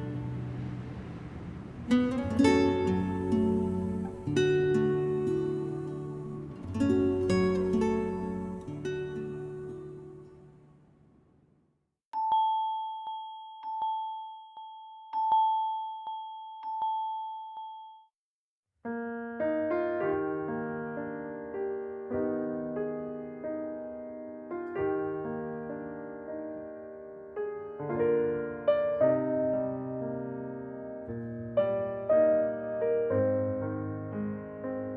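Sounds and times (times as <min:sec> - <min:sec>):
bell-like ringtone chime: 0:12.2 - 0:18.1
keyboard ringtone melody: 0:12.2 - 0:18.1.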